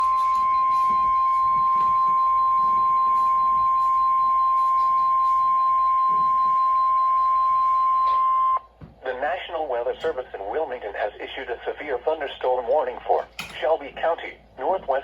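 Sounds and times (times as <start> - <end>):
continuous high alarm beep: 0.0 - 8.7.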